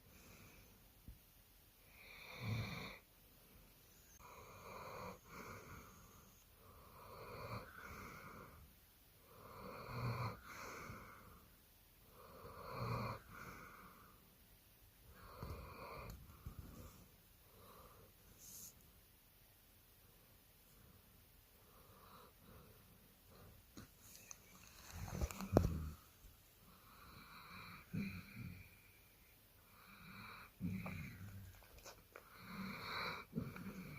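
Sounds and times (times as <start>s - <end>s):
dog snoring: 1.9s - 3.0s, 4.0s - 8.6s, 9.2s - 11.4s, 12.1s - 14.1s, 15.1s - 17.0s, 26.7s - 29.0s, 29.6s - 31.5s, 32.2s - 33.9s.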